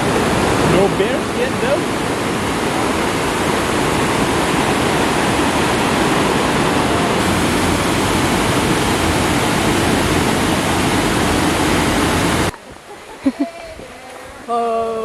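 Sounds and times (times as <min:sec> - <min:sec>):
fast-flowing river water: 0:00.0 - 0:12.8.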